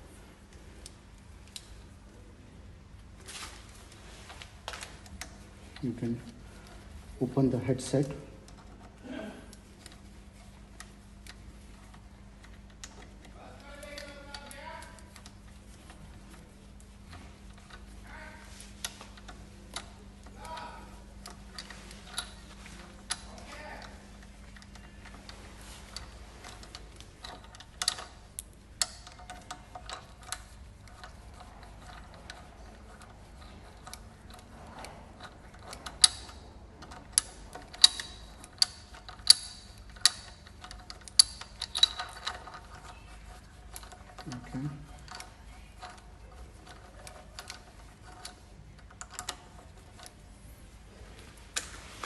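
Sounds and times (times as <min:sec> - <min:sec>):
metallic clicks of bike tools: 0:18.8 - 0:50.2.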